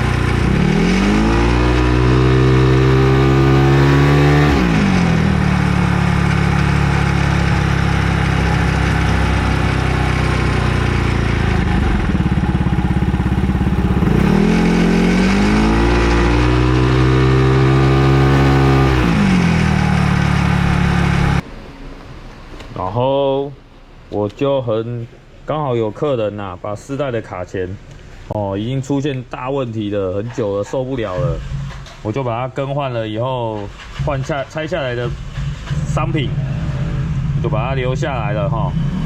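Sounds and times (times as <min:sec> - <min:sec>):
scooter engine idling and revving: 0:00.0 - 0:21.5, 0:38.2 - 0:39.0.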